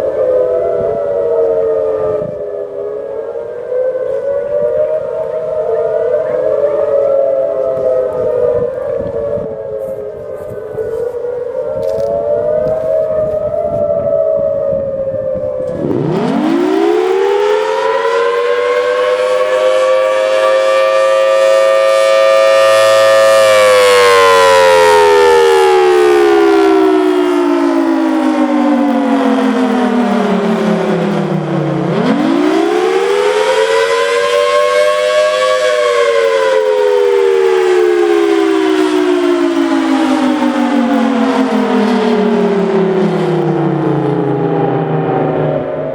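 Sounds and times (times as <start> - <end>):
overlapping wavering siren tones: 0.0 - 45.9
mechanical siren winding up and down: 11.8 - 45.9.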